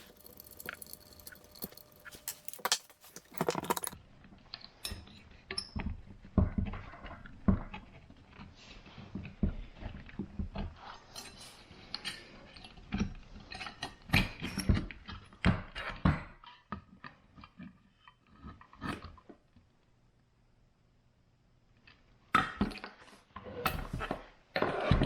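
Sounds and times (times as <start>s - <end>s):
wrench and metal parts clicking: 0.0s - 4.0s.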